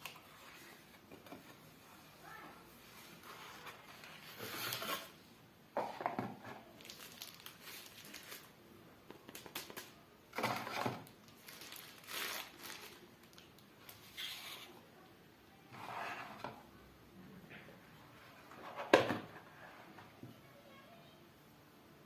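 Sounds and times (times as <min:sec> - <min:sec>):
packaging crinkling and rustling: 0:03.2 - 0:05.2, 0:06.3 - 0:14.7.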